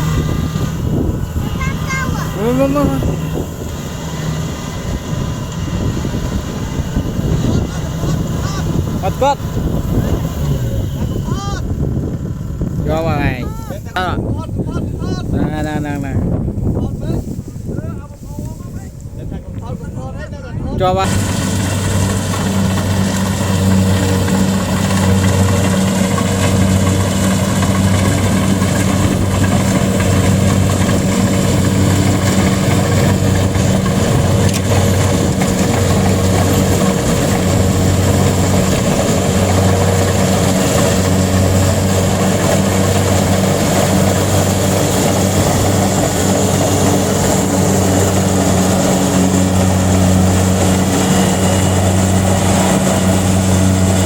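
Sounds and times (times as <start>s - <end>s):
harvester engine humming: 0.0s - 54.0s.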